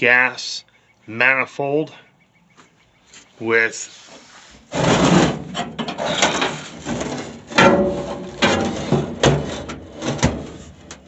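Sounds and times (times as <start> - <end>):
rusty metal scraping and rattling: 3.9 - 11.0.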